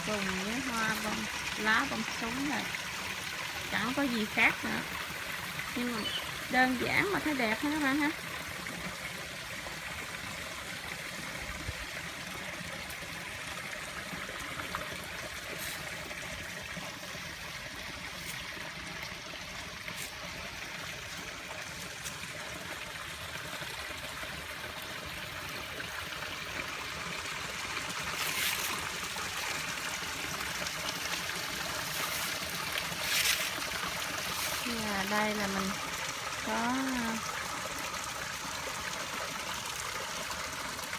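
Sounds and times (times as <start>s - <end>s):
waterfall splashing into pond: 0.0s - 40.9s.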